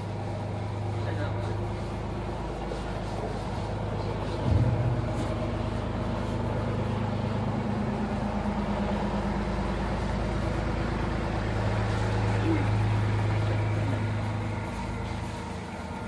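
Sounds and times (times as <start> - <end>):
motor humming: 4.2 - 16.0.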